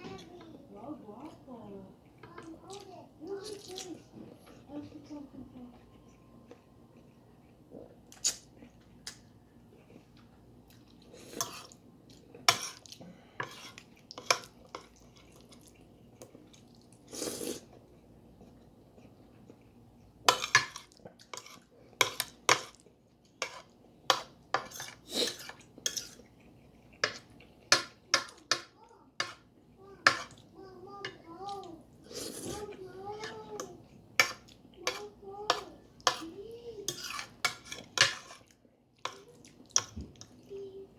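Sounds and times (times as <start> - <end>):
utensil scraping a plate: 34.2 - 38.5
utensils clinking on a plate: 36.9 - 38.5.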